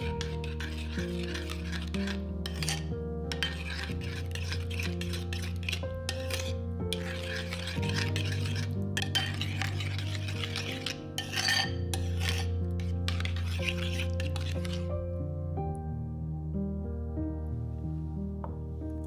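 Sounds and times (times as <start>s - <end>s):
utensil scraping a bowl: 0.0s - 15.0s
background music with low notes: 0.0s - 19.0s.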